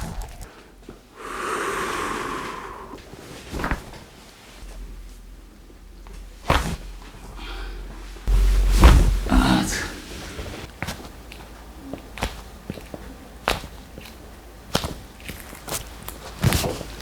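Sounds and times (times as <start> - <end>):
long breathy rush: 1.1 - 3.2, 7.4 - 10.6
spine popping: 8.3 - 10.0.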